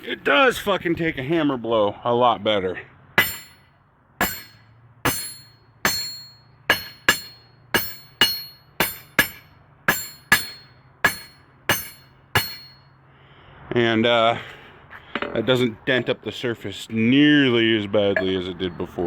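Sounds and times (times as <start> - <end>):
hammer striking anvil: 3.2 - 12.9.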